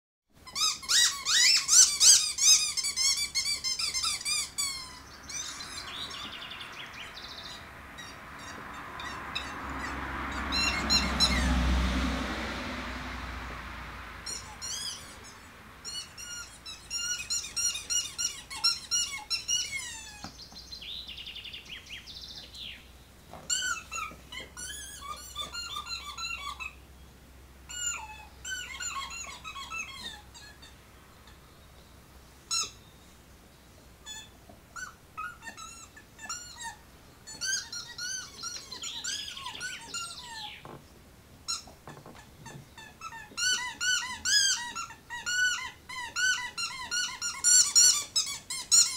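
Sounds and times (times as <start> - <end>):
squeaky dog toy squeaking: 0.4 - 6.3, 7.4 - 11.6, 14.2 - 20.4, 23.4 - 26.9, 27.6 - 31.4, 32.5 - 32.8, 34.0 - 40.8, 41.4 - 48.9.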